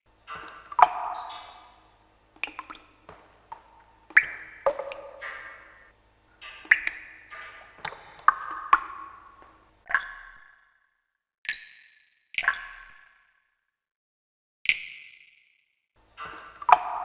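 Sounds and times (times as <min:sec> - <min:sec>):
water drops plinking: 0:00.2 - 0:10.4, 0:16.1 - 0:17.0.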